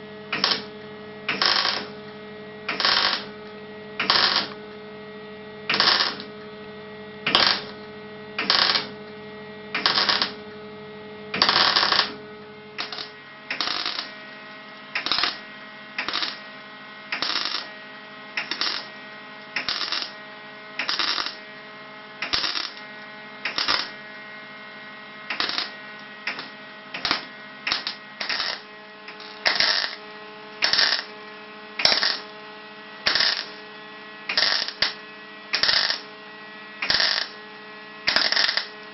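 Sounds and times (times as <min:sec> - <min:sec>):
steady hum: 0:00.0 - 0:38.9
welding arc crackling: 0:00.3 - 0:02.1, 0:02.7 - 0:04.7, 0:05.7 - 0:06.4, 0:07.2 - 0:07.8, 0:08.4 - 0:09.0, 0:09.7 - 0:10.5, 0:11.4 - 0:14.3, 0:14.9 - 0:17.8, 0:18.4 - 0:19.0, 0:19.6 - 0:20.2, 0:20.8 - 0:21.4, 0:22.2 - 0:24.0, 0:25.3 - 0:31.2, 0:31.8 - 0:32.4, 0:33.0 - 0:33.7, 0:34.3 - 0:36.2, 0:36.8 - 0:37.4, 0:38.1 - 0:38.8.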